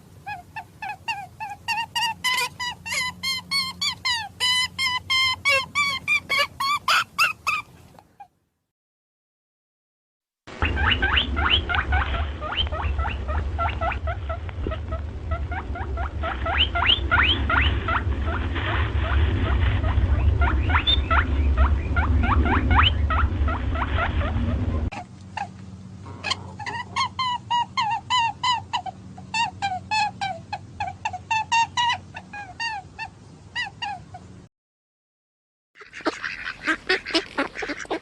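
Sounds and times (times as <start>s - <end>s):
animal chirping: 0.2s - 8.3s, 10.6s - 18.4s, 19.0s - 34.2s
small animals squeaking: 0.2s - 8.3s, 10.6s - 34.2s
low rumble: 10.5s - 26.7s.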